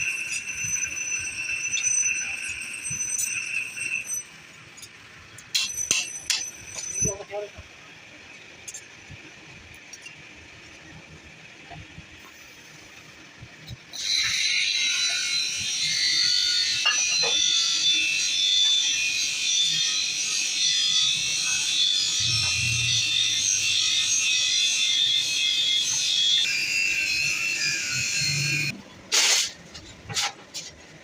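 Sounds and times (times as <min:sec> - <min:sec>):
electric grinder on steel: 0:14.0 - 0:29.6.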